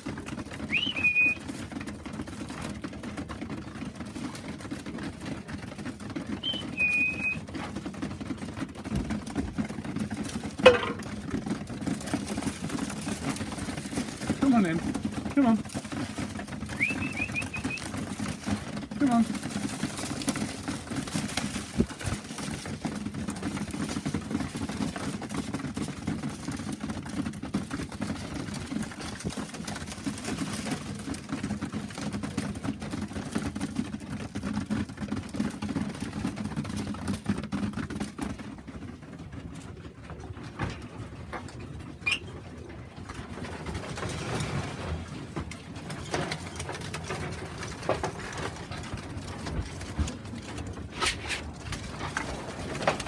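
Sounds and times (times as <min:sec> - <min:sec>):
pigeons cooing: 0:06.4 - 0:07.5, 0:16.6 - 0:19.5.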